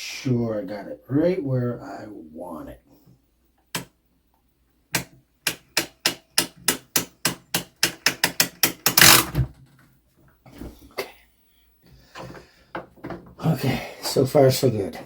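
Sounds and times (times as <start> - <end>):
ratchet clicking: 7.8 - 9.3
rattling burst: 8.9 - 9.4.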